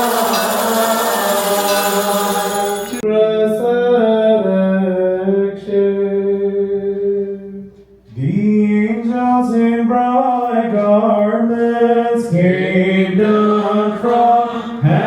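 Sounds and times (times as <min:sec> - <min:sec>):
voices chanting together: 0:00.0 - 0:03.1, 0:12.1 - 0:15.0.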